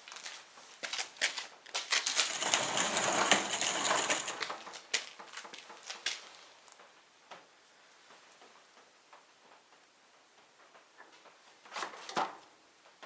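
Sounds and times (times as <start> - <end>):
small hard objects clattering: 0.0 - 6.3.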